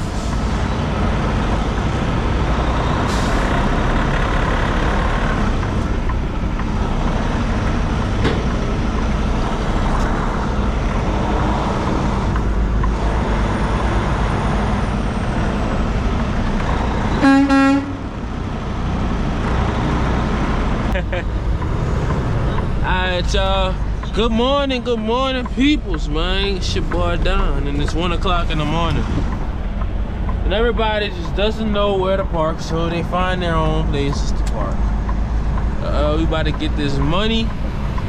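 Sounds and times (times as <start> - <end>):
road noise: 0.0 - 38.0
truck engine rumble: 0.0 - 38.0
truck horn blast: 17.1 - 18.1.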